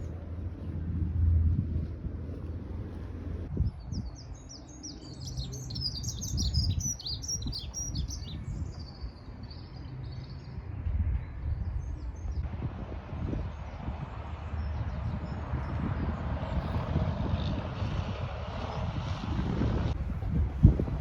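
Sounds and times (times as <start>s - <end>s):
low rumble: 0.0s - 4.6s, 8.0s - 21.0s
songbird chirping and trilling: 3.6s - 12.4s.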